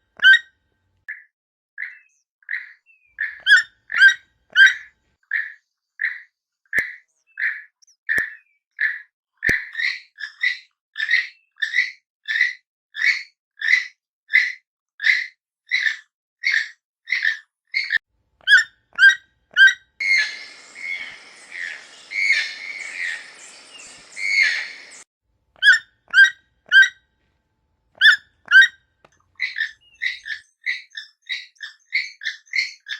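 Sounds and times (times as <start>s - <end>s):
toucan calling: 17.8s - 25.0s, 29.4s - 32.9s.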